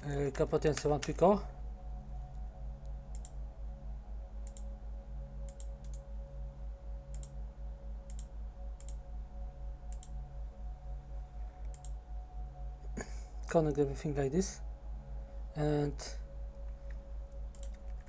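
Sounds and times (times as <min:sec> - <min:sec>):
pulsing electrical hum: 0:00.0 - 0:18.0
computer mouse clicking: 0:03.1 - 0:03.4, 0:04.4 - 0:04.7, 0:05.5 - 0:06.0, 0:07.1 - 0:07.4, 0:08.1 - 0:09.0, 0:09.9 - 0:10.2, 0:11.6 - 0:12.0, 0:16.9 - 0:18.0.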